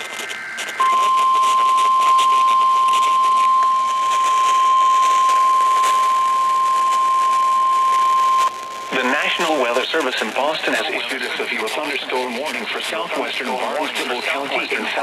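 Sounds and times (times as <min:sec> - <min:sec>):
faint radio static hiss: 0:00.0 - 0:15.0
steady alarm tone: 0:00.7 - 0:09.8.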